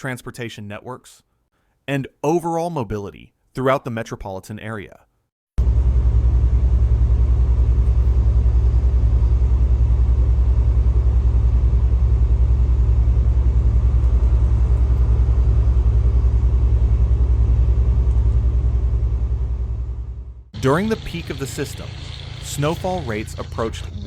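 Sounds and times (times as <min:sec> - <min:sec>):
vehicle engine running: 0:05.6 - 0:24.0.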